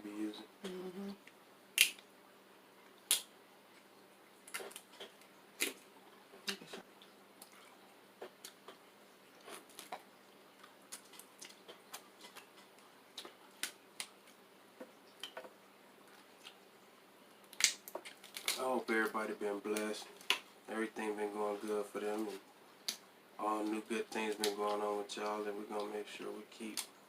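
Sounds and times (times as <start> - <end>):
seafood shells cracking: 1.8 - 2.0, 3.1 - 3.3, 4.4 - 5.8, 17.4 - 18.6.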